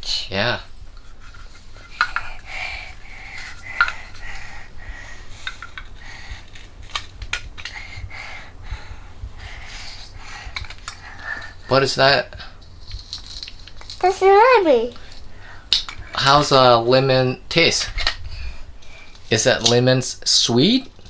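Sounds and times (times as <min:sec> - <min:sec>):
rustling: 0:08.8 - 0:17.0.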